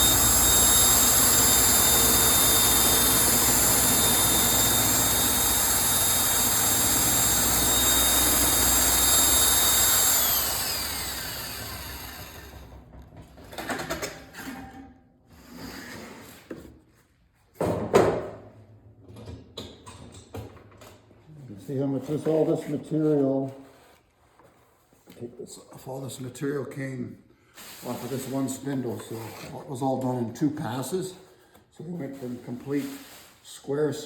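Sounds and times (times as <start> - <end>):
table saw whining: 0.0 - 13.1.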